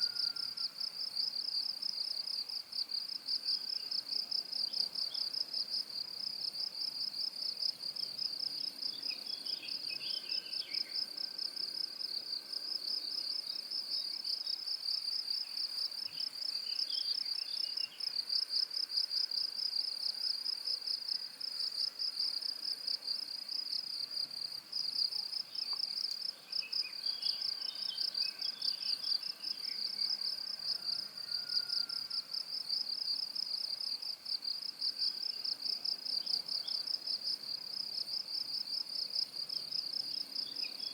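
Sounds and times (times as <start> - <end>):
crickets trilling: 0.0 - 6.7.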